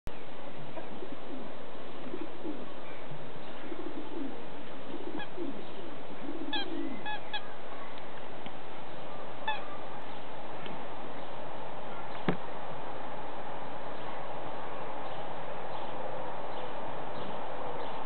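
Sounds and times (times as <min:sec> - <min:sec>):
soft low animal calls: 0:00.7 - 0:08.2, 0:08.9 - 0:10.4.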